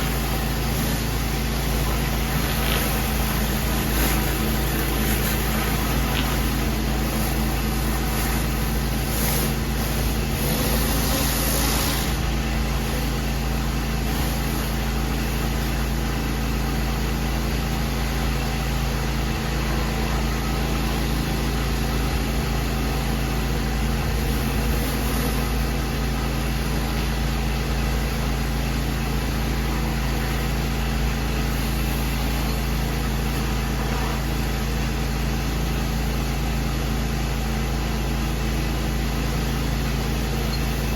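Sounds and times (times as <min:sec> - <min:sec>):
spray hissing: 0:00.0 - 0:12.9
pressure washer engine hum: 0:00.0 - 0:40.9.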